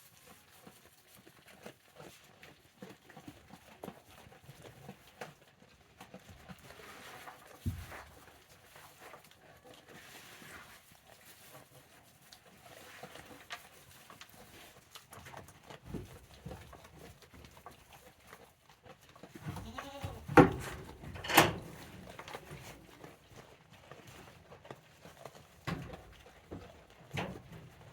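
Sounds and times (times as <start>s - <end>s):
goat bleating: 19.5s - 20.6s.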